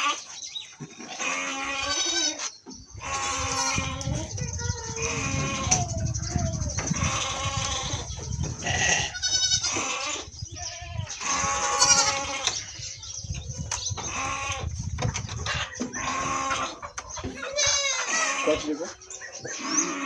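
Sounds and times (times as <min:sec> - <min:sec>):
goats bleating: 0:01.0 - 0:06.1, 0:06.8 - 0:12.8, 0:14.0 - 0:14.8, 0:15.9 - 0:20.0.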